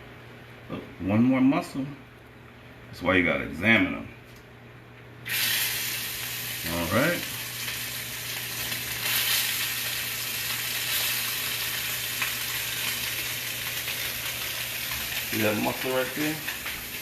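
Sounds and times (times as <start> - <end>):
scallops sizzling in hot oil: 5.3 - 17.0.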